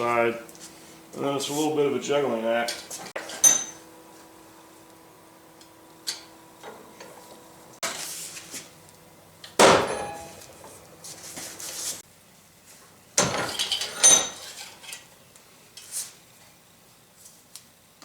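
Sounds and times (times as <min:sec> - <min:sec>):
ringing metal clang: 0:03.4 - 0:03.8, 0:09.6 - 0:10.5.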